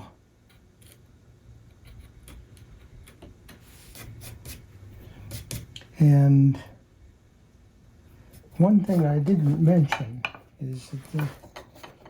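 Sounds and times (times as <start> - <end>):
scratchy rub: 3.6 - 5.7.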